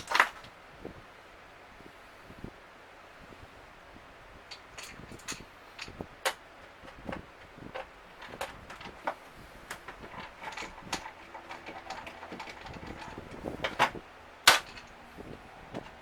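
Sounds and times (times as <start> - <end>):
plastic refrigerator parts clicking: 0.0 - 0.5, 4.5 - 15.1.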